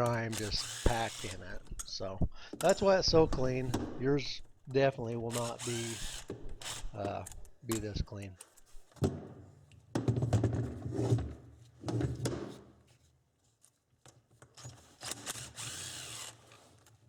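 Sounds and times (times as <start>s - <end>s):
small power tool running: 0.3s - 1.4s, 5.3s - 7.0s, 15.2s - 16.4s.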